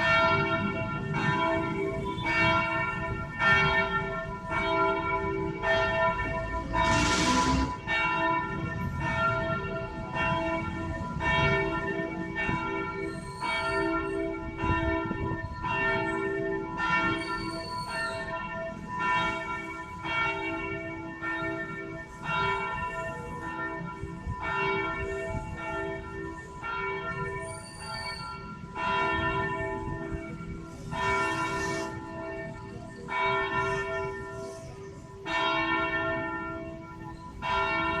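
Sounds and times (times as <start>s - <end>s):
cathedral bell ringing: 0.0s - 38.0s.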